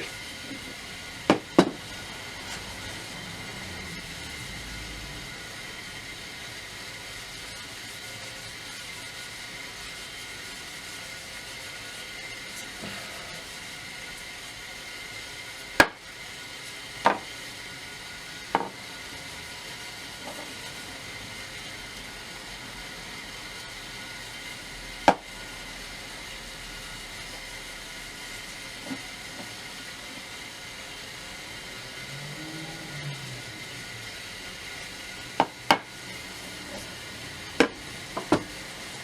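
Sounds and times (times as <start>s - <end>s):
objects knocking on workbench: 1.3s - 1.8s, 17.0s - 17.3s, 18.6s - 18.8s, 37.6s - 38.5s.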